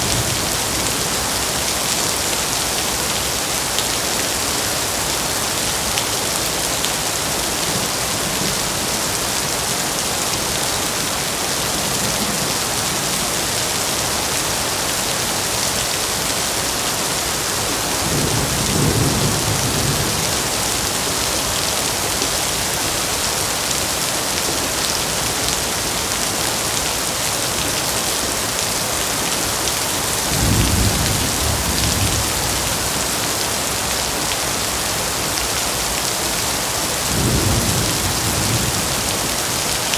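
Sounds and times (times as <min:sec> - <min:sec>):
heavy rain: 0:00.0 - 0:39.9
low rolls of thunder: 0:30.3 - 0:33.1, 0:37.1 - 0:39.2.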